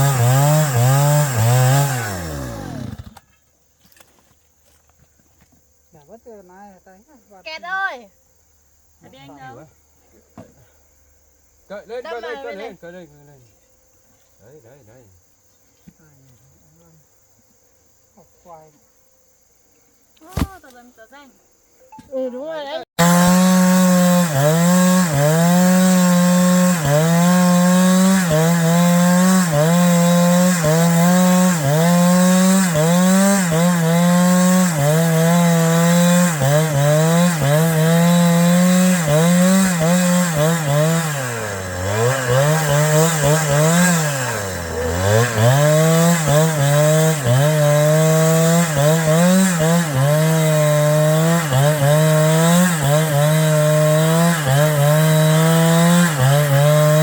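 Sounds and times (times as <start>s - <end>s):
chainsaw cutting wood: 0.0s - 5.6s, 20.2s - 20.8s, 22.9s - 57.0s.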